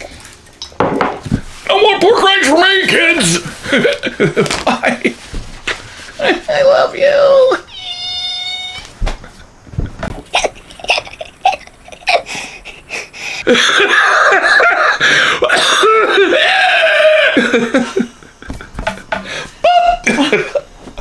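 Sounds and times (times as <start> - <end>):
man laughing: 3.2 - 5.2, 9.8 - 20.8.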